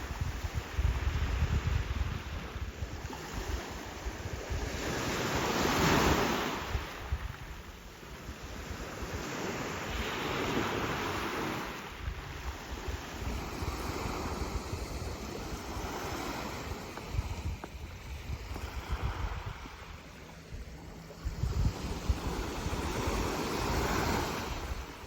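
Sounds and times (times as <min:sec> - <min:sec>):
sea waves washing in: 0:00.0 - 0:25.0
wind buffeting microphone: 0:00.0 - 0:25.0.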